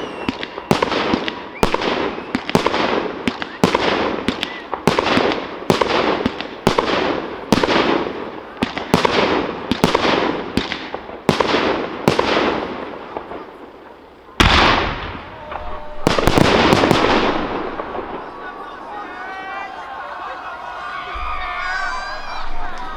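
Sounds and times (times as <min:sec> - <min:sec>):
fireworks bursting with crackle: 0:00.0 - 0:22.9
very loud firework bang: 0:14.4 - 0:18.8.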